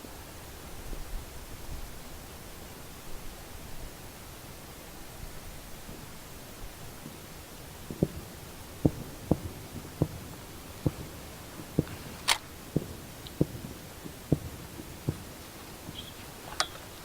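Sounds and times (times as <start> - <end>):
distant firework thuds: 5.9 - 17.0
sharp firework crack: 6.8 - 17.0.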